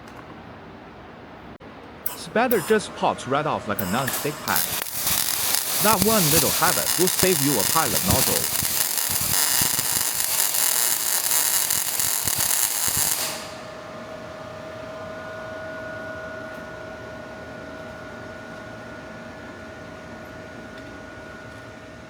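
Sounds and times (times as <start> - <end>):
welder humming with faint whine: 1.7 - 22.0
welding arc crackling: 3.7 - 13.8.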